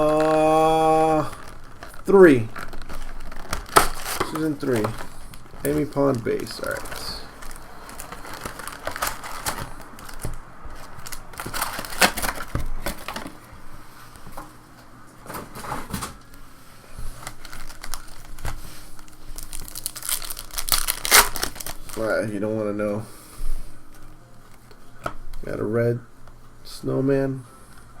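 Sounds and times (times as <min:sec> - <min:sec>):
pack wrappers crinkling: 0:00.0 - 0:13.4, 0:17.1 - 0:22.6.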